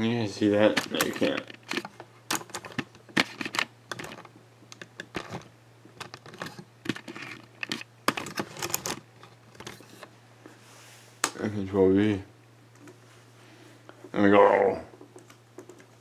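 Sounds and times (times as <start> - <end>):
laptop keyboard typing: 15.1 - 16.0.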